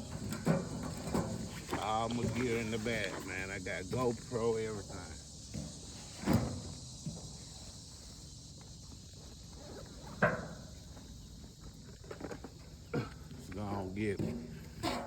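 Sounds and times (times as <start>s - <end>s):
night insects chorus: 0.0s - 15.0s.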